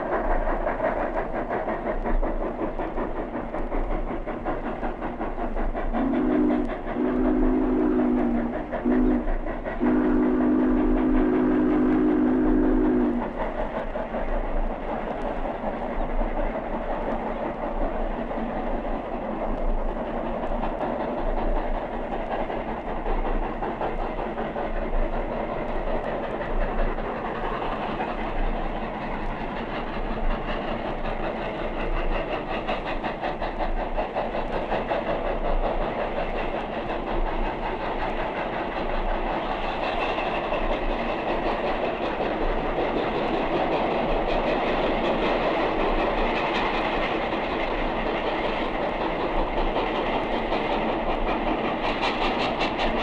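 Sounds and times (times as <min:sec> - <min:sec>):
steam locomotive rush: 0:00.0 - 0:53.0
wheels clicking on rails: 0:00.0 - 0:53.0.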